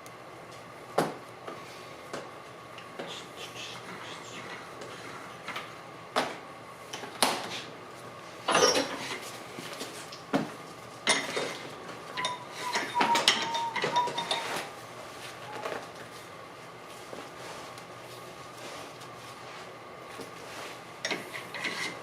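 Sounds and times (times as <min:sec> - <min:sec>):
wavering metallic squeal: 0:12.2 - 0:14.4.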